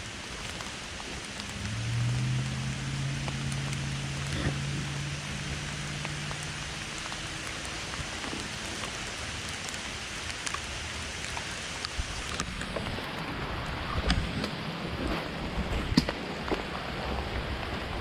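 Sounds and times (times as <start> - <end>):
rain falling on leaves: 0.0 - 18.0
raindrops ticking: 0.0 - 18.0.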